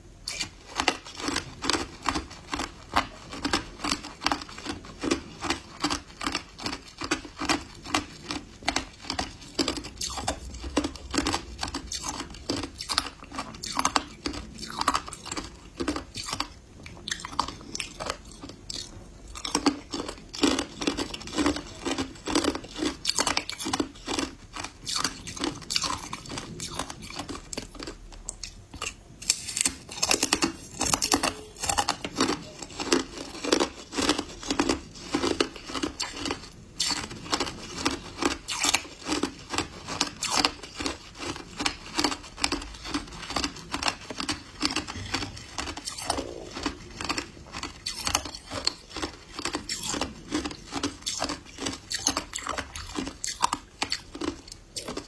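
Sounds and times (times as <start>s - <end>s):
loud crunching of ice: 28.8s - 55.0s.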